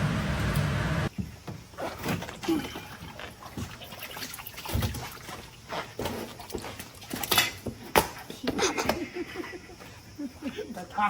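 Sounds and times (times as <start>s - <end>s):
water splashing: 1.8s - 7.2s.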